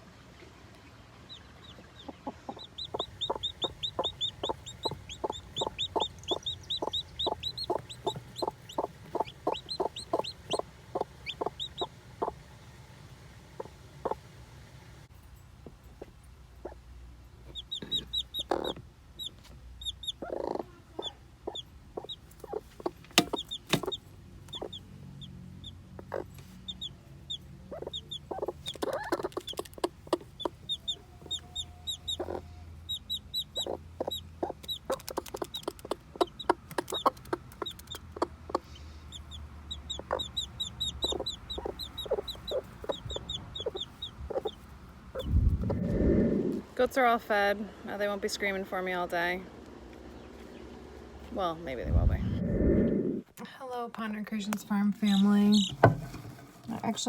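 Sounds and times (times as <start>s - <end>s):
chick peeping: 1.2s - 12.7s, 13.5s - 14.2s, 16.0s - 16.8s, 17.4s - 46.6s, 55.1s - 55.9s
hen clucking: 1.2s - 12.8s, 13.4s - 14.3s, 15.6s - 46.7s, 55.0s - 57.0s.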